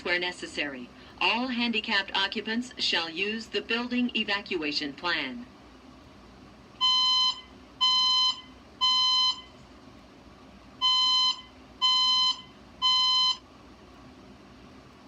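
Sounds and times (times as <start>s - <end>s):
fire alarm beeps: 6.8s - 9.5s, 10.8s - 13.4s.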